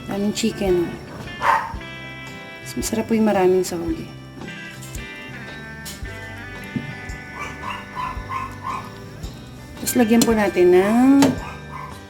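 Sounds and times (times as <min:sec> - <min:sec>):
background music with held notes: 0:00.0 - 0:12.0.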